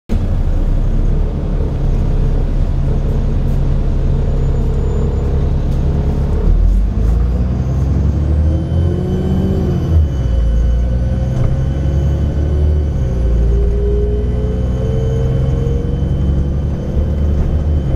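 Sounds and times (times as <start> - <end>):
bus diesel engine running: 0.1 - 17.9
whine climbing in pitch: 1.9 - 17.9
turbocharger whistle: 7.9 - 17.9.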